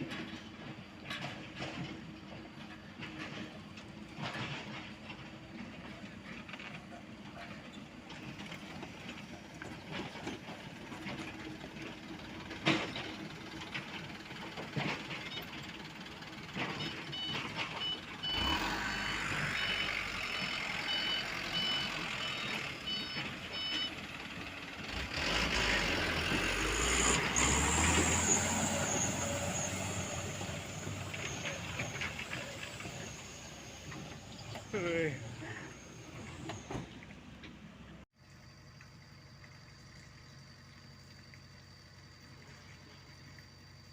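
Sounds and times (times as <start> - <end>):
diesel engines running: 0.0 - 38.1
engine revving: 16.6 - 23.8, 24.8 - 36.8
reversing alarm beeping: 16.7 - 24.0.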